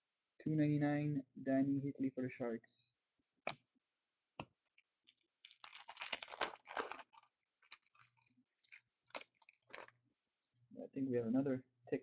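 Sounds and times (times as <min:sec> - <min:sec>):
foil wrapper crinkling and tearing: 0:05.0 - 0:10.0.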